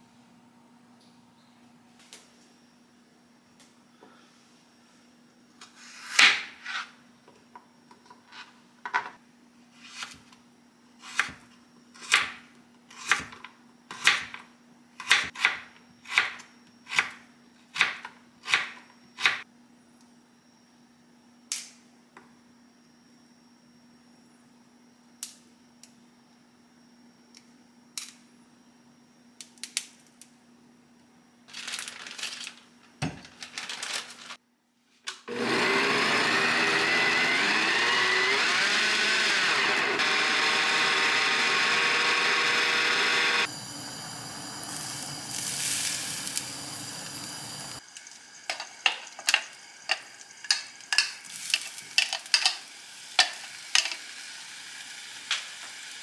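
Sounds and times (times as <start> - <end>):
electric blender running: 35.3 - 56.0.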